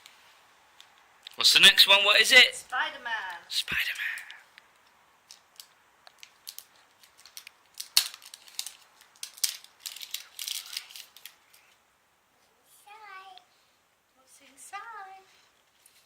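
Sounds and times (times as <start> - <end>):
wrapper crinkling: 5.3 - 11.8.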